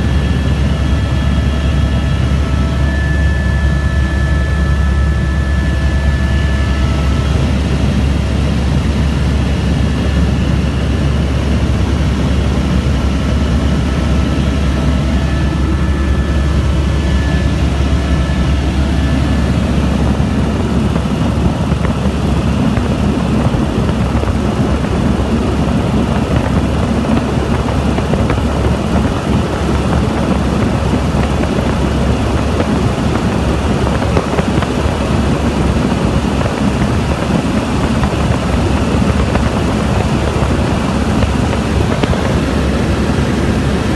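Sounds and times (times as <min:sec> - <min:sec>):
faint high whine: 0:00.0 - 0:08.3
helicopter engine and rotor: 0:00.0 - 0:43.9.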